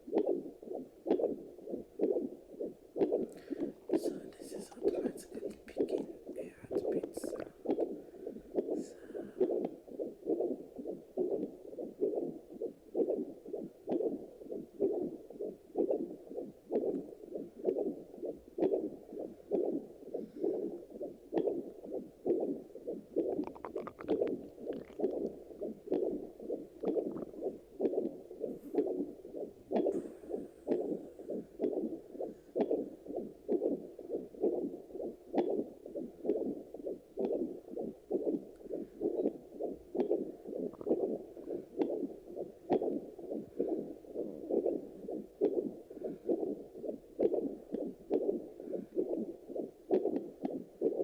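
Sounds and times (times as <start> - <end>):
heartbeat on doppler monitor: 0.0 - 51.0.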